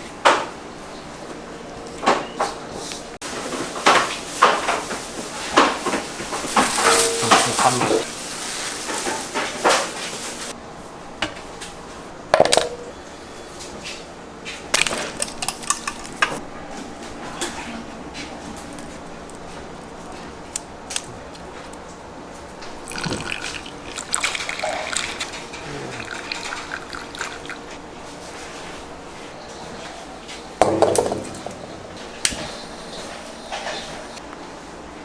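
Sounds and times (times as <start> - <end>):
metal utensils and bowls clinking: 6.6 - 8.1.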